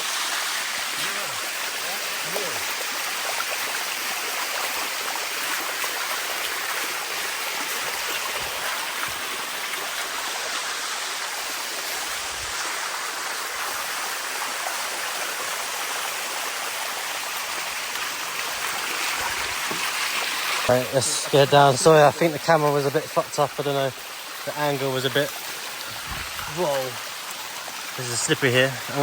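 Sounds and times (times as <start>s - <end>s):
waterfall rushing: 0.0s - 29.0s.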